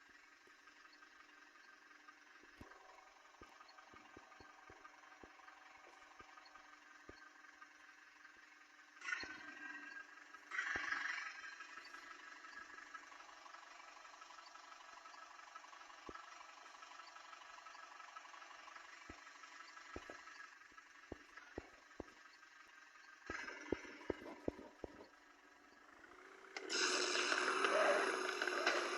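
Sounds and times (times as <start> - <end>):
faint vehicle engine running: 0.0 - 28.9
sharp clicks and knocks: 19.1 - 20.5, 23.2 - 25.2.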